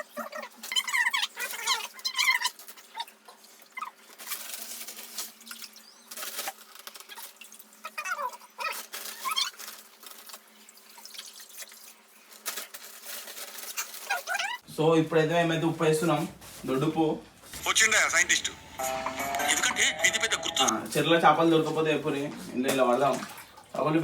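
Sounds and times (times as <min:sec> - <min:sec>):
water dripping and splashing: 0:01.4 - 0:08.0, 0:09.0 - 0:13.1, 0:21.5 - 0:24.0.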